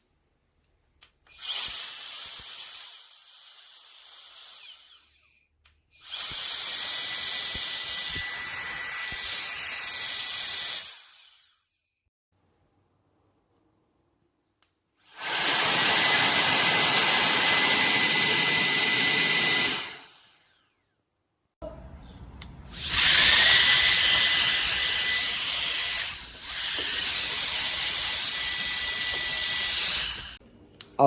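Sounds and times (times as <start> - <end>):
air duster fan whining: 15.2 - 20.4, 22.4 - 30.4.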